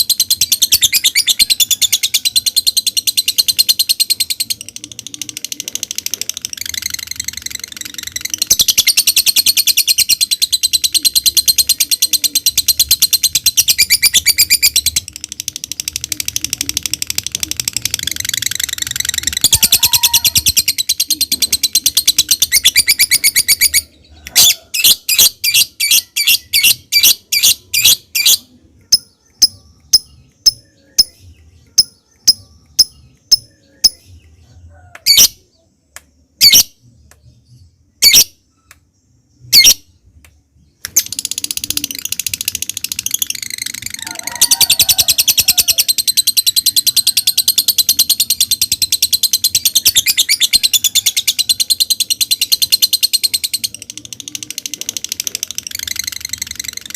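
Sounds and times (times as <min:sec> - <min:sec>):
bird chirps: 0:00.0 - 0:56.9
lovebird trilling: 0:15.8 - 0:34.0, 0:40.9 - 0:56.9.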